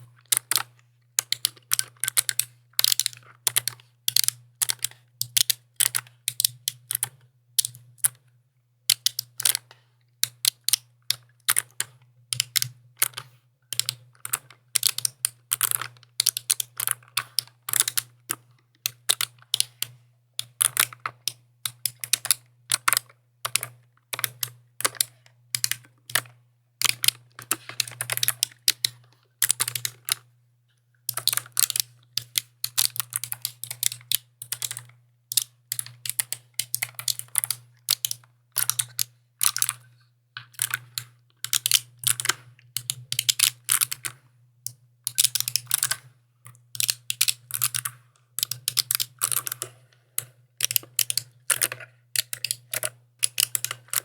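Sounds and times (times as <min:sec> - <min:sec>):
mechanical keyboard typing: 0:00.0 - 0:08.2, 0:08.9 - 0:30.3, 0:31.1 - 0:44.2, 0:45.1 - 0:54.0.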